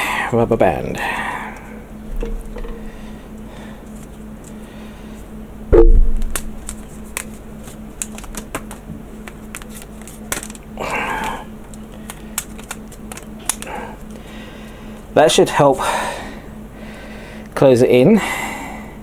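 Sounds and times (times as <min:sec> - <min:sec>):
loud knock: 0:05.7 - 0:06.6.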